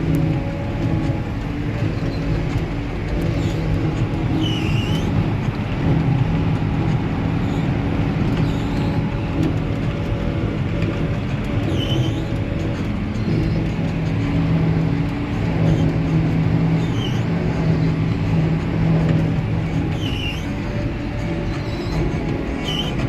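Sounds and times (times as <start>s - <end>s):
diesel machinery engines running: 0.0s - 23.0s
high squeak: 3.2s - 5.2s, 11.6s - 13.7s, 16.7s - 17.8s, 19.7s - 23.0s.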